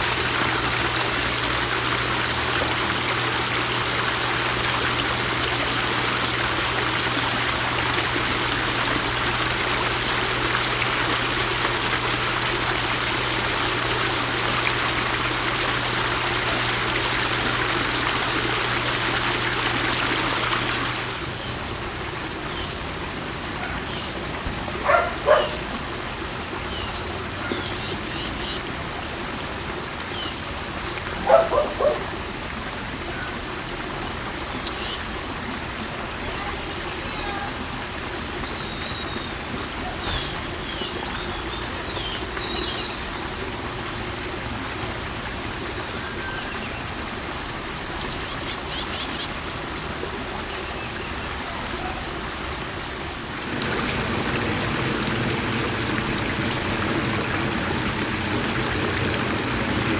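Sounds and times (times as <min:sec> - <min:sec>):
birds calling: 0:51.6 - 0:59.9
low hum: 0:53.3 - 0:59.9
steady rushing noise: 0:53.3 - 0:59.9.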